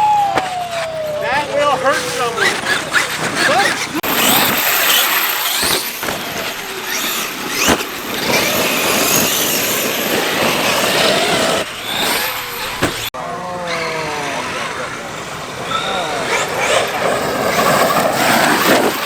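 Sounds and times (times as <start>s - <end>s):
electric motor whining: 0.0s - 19.0s
tyres rushing on dirt: 0.0s - 19.0s.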